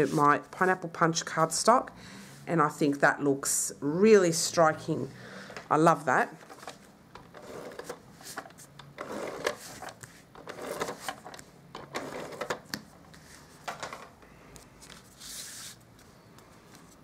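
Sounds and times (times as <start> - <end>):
paper rustling and sliding: 0.0 - 0.5, 6.4 - 14.0, 14.6 - 17.0.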